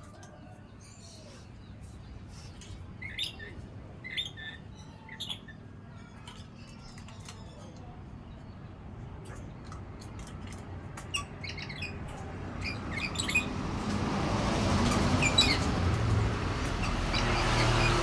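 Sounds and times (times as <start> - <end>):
parrot chirping: 12.6 - 13.5.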